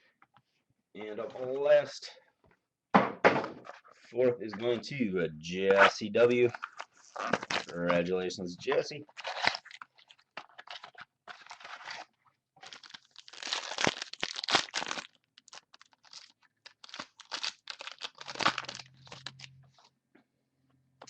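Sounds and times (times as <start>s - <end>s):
plastic wrapper crinkling and tearing: 6.1s - 19.9s.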